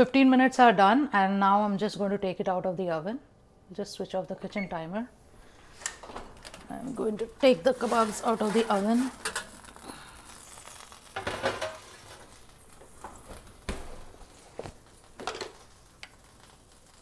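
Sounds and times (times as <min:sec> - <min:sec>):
baking pan scraping: 0:05.6 - 0:09.8
pan and oven rack clattering: 0:07.8 - 0:09.6, 0:11.2 - 0:12.3.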